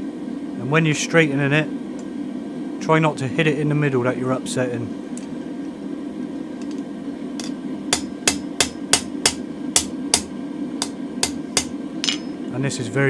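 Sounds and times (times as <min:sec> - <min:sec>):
hammer ringing on anvil: 0:07.4 - 0:12.4.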